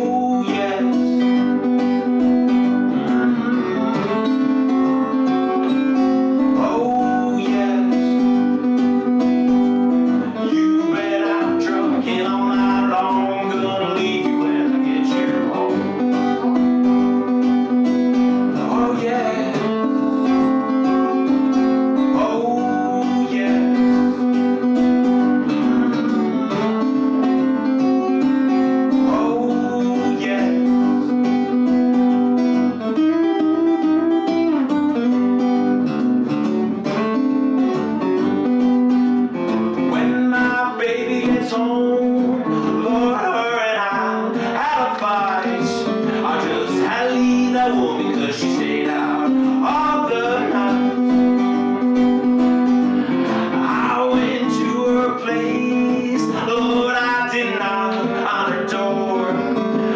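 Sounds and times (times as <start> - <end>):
acoustic blues guitar: 0.0 - 59.9.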